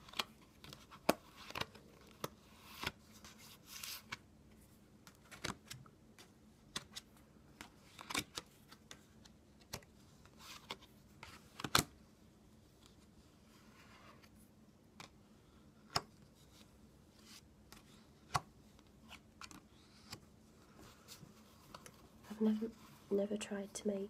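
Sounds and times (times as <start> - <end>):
playing cards clicking and rustling: 0.0 - 4.3, 5.0 - 12.0, 15.8 - 22.1.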